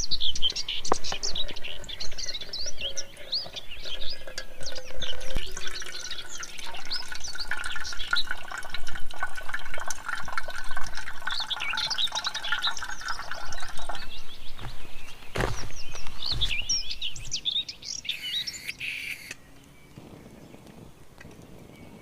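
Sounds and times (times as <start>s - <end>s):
small birds chirping: 0.0s - 22.0s
water running and splashing: 0.9s - 17.4s.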